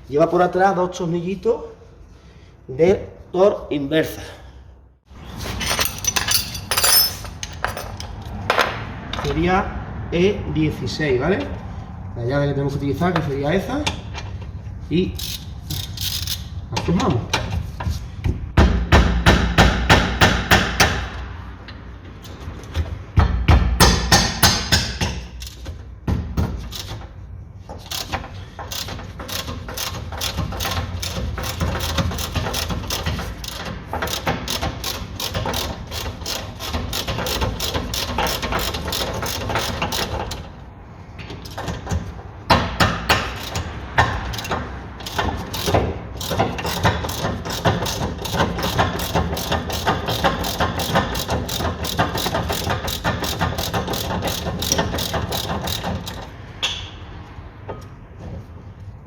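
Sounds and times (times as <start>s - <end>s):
ratchet wrench clicking: 15.2s - 16.6s, 25.0s - 25.6s, 26.6s - 27.0s, 27.8s - 40.4s, 43.1s - 56.3s.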